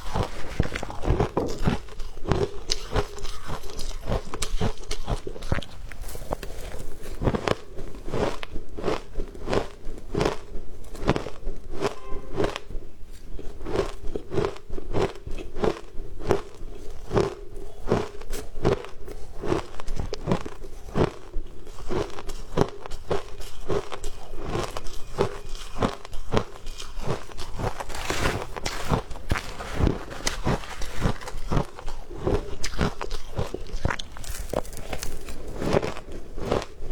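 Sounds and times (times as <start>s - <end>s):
shaved ice crunched between teeth: 0.0s - 10.4s, 21.7s - 36.8s.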